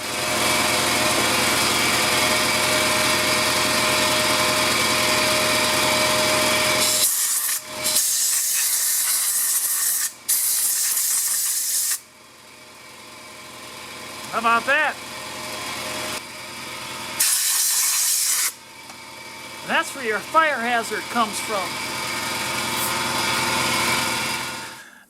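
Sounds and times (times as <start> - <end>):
compressed air hissing: 6.8 - 12.0, 17.2 - 18.6.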